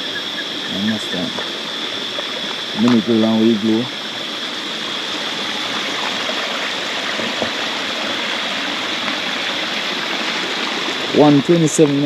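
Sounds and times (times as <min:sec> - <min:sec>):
faint high steady tone: 0:00.0 - 0:06.3
stream water rushing: 0:00.8 - 0:12.0.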